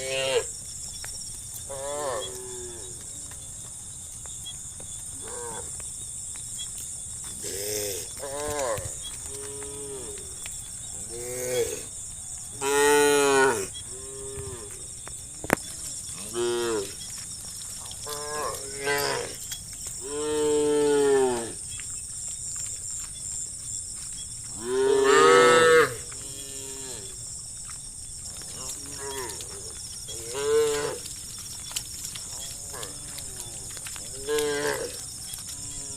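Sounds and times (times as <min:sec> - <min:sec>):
cattle mooing: 0:24.6 - 0:27.2, 0:28.5 - 0:31.1.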